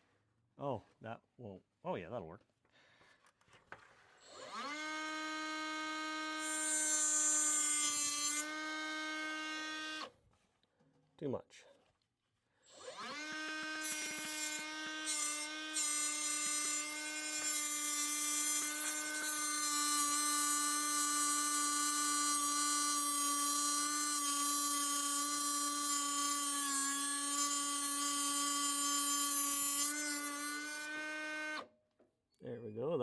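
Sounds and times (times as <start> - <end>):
electric grinder running: 4.3 - 10.1, 12.7 - 31.6.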